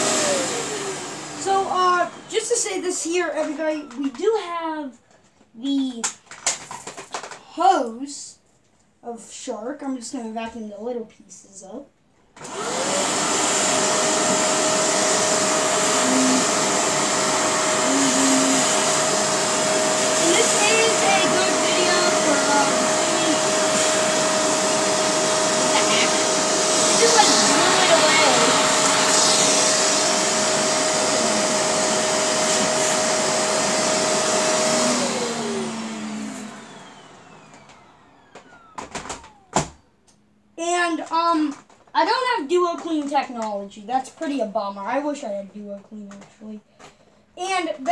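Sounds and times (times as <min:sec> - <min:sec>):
vacuum cleaner running: 0:00.0 - 0:04.2, 0:12.4 - 0:39.9.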